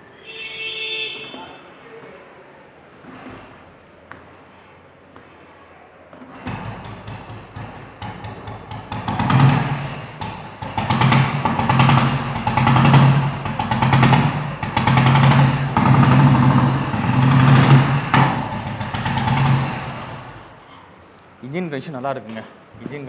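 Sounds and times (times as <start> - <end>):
motorcycle engine revving: 6.3 - 20.8.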